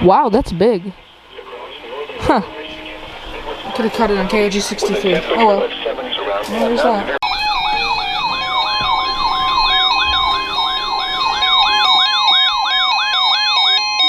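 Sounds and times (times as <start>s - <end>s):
steady warning alarm tone: 0.6s - 14.0s
warbling siren alarm: 7.2s - 14.0s.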